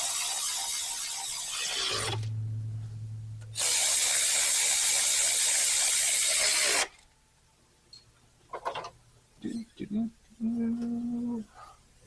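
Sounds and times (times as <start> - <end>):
electric ratchet whirring: 0.0 - 2.3, 3.5 - 6.9.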